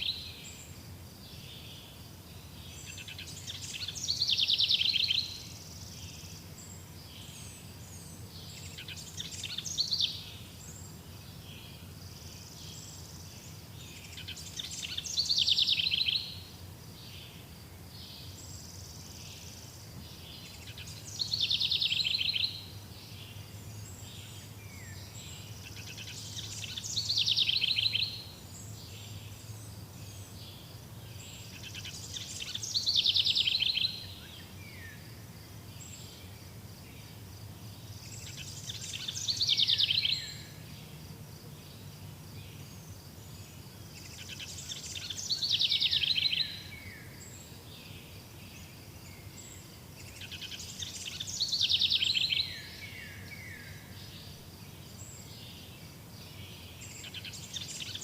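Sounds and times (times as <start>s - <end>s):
faint forest ambience: 0.0s - 58.0s
songbird trilling: 2.8s - 6.3s, 14.0s - 16.5s, 20.4s - 22.7s, 24.2s - 28.3s, 31.4s - 35.0s, 38.0s - 40.6s, 44.0s - 46.8s, 50.0s - 53.7s.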